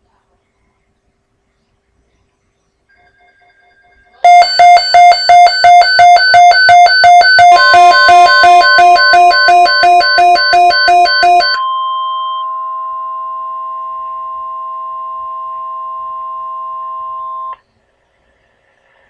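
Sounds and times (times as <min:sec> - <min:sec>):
rapidly pulsing beeps: 0:02.9 - 0:11.6
electronic attention tone: 0:02.9 - 0:17.6.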